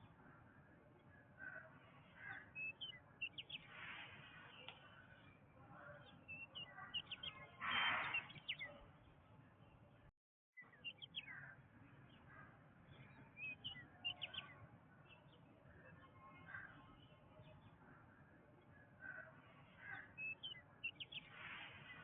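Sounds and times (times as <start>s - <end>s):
birds chirping and whistling: 6.2s - 8.7s
harsh bird call: 6.4s - 8.7s.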